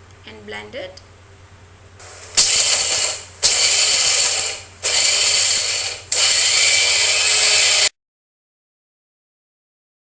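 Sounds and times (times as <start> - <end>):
electric blender grinding: 2.4 - 7.9.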